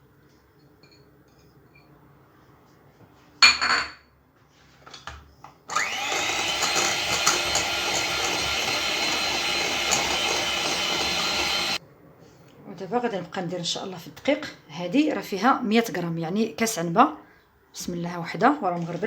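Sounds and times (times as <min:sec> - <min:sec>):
electric mixer motor running: 0:05.7 - 0:11.8.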